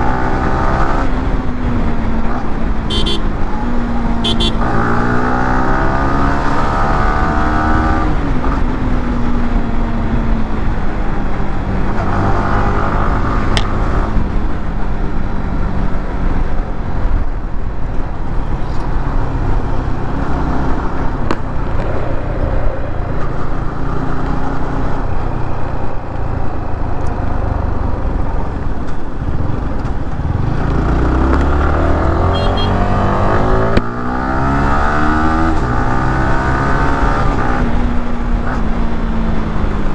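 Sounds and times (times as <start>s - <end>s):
motorcycle engine running: 2.8s - 4.8s, 24.8s - 33.3s.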